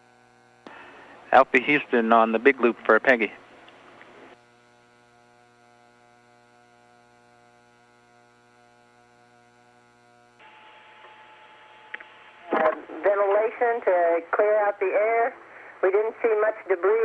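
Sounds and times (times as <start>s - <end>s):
faint electrical hum: 0.0s - 17.0s
radio channel hiss: 0.6s - 3.4s, 10.4s - 17.0s
radio click: 11.9s - 13.5s
person speaking: 12.5s - 17.0s.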